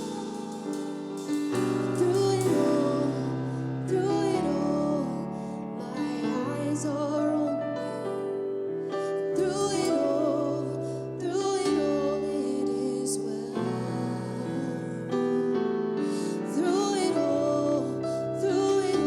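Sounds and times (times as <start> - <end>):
person singing long notes: 0.0 - 7.6
piano chords: 0.0 - 19.0.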